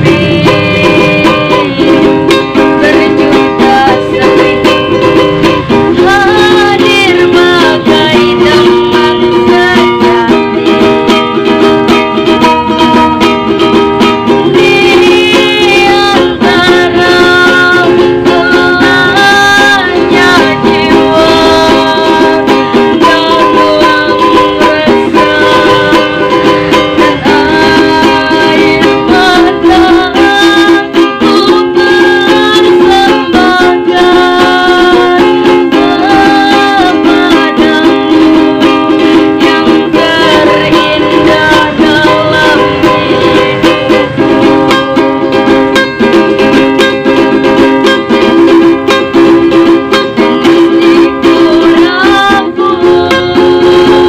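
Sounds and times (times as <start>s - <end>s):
girl singing a slow pop song: 0.0s - 5.0s, 5.9s - 10.5s, 14.4s - 26.4s, 27.1s - 44.1s, 50.8s - 54.0s
ukulele strumming: 0.0s - 54.0s.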